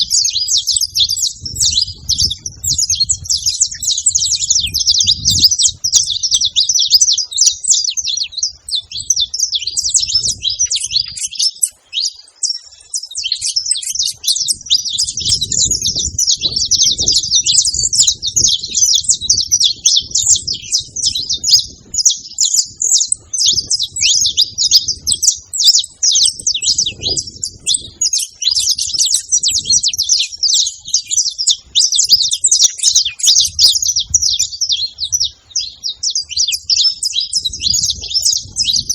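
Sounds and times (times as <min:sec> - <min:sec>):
finches chirping: 0:00.0 - 0:38.9.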